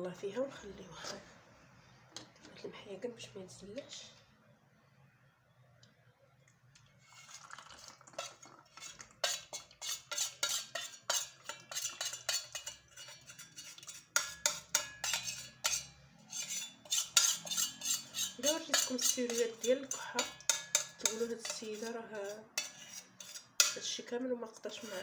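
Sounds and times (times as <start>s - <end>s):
spoon scraping and clinking a dish: 7.0s - 25.0s.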